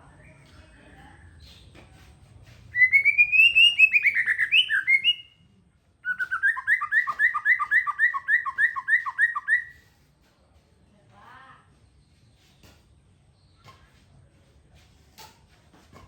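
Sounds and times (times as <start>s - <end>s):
songbird singing: 2.7s - 9.9s.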